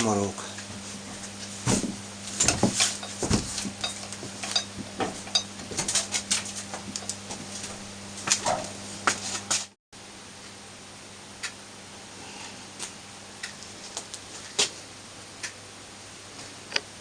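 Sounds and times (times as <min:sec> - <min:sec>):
steady low hum: 0:00.0 - 0:17.0
metal tools clinking: 0:02.4 - 0:03.2, 0:03.8 - 0:06.1.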